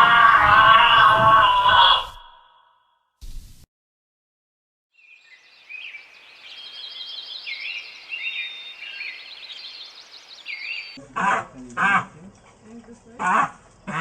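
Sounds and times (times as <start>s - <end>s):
songbirds singing: 4.9s - 11.0s
steady outdoor hiss: 5.2s - 13.9s.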